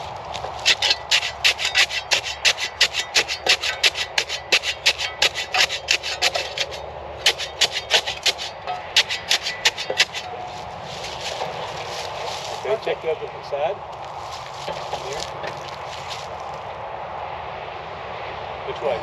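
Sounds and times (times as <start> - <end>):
rapid rhythmic scraping: 0.4 - 12.9.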